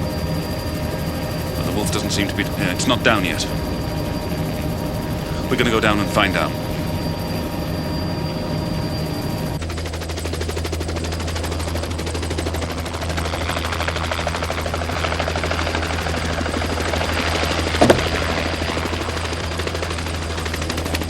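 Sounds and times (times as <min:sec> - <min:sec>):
steady low hum: 0:17.7 - 0:19.0
helicopter chopping: 0:17.7 - 0:19.1
loud knock: 0:17.8 - 0:18.5.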